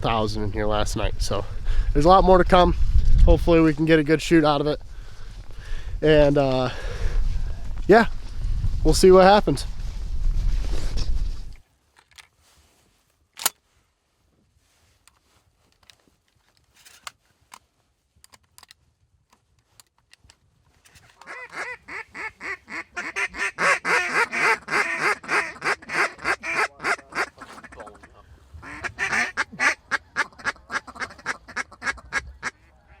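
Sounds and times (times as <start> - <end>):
geese honking: 21.2 - 33.0.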